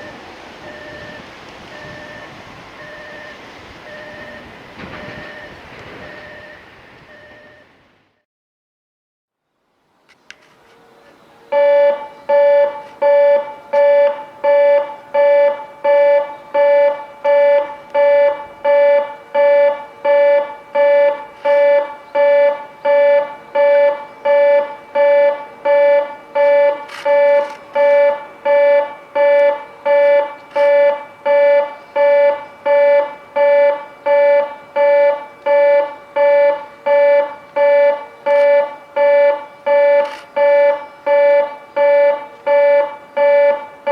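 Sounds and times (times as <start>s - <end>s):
pulsing electronic buzzer: 0.0s - 7.7s, 11.5s - 43.9s.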